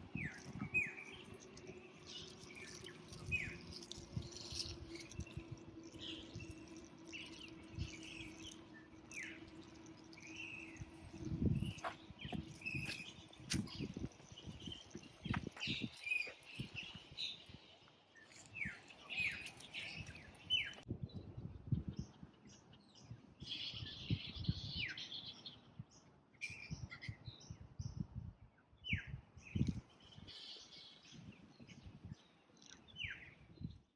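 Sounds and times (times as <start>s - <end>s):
birds chirping: 0.0s - 20.8s.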